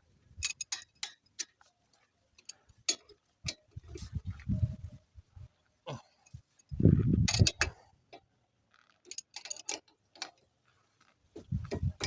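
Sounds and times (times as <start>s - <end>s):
spanner clicking on bolts: 0.4s - 1.6s, 7.3s - 7.7s, 9.1s - 10.3s.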